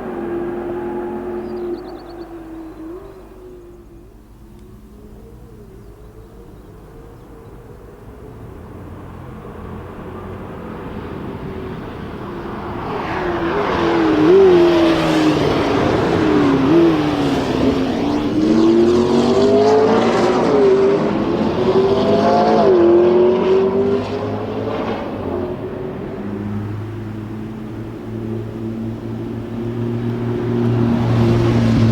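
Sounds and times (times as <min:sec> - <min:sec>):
sports car engine revving: 0:12.0 - 0:31.9.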